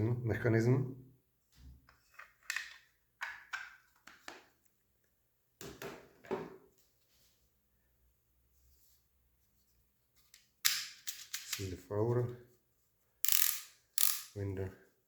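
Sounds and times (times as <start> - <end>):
plastic magazine clicking and rattling: 10.6 - 11.6, 13.2 - 14.3.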